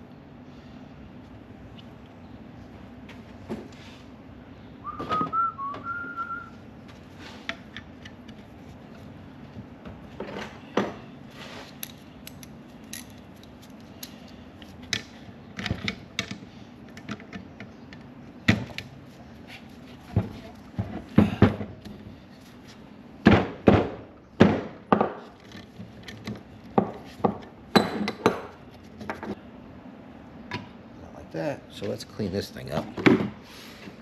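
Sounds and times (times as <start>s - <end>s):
person whistling: 4.8s - 6.6s.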